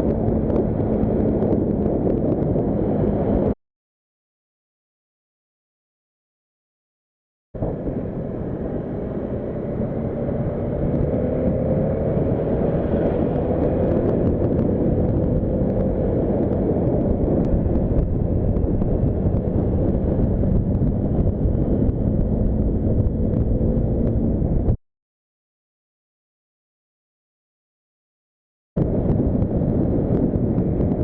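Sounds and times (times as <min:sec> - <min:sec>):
motorcycle engine at high speed: 0:00.0 - 0:03.6, 0:07.6 - 0:24.8, 0:28.8 - 0:31.0
wind blast on microphone: 0:00.0 - 0:03.6, 0:07.6 - 0:24.8, 0:28.8 - 0:31.0.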